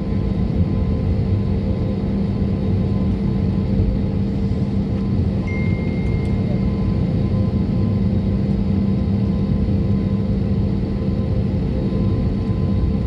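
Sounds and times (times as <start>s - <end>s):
constant hum: 0.0s - 13.0s
jet engines rumbling in cabin: 0.0s - 13.0s
faint high steady tone: 5.4s - 7.0s.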